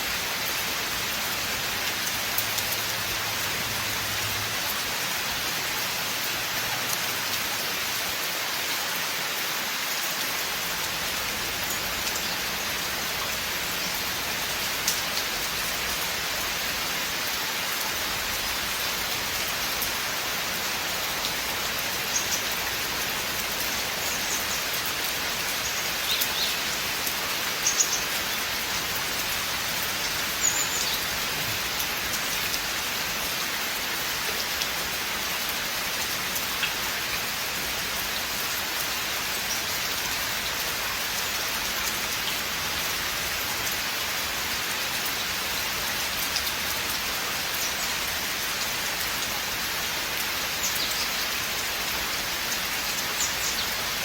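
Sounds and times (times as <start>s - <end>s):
rain on leaves: 0.0s - 54.0s.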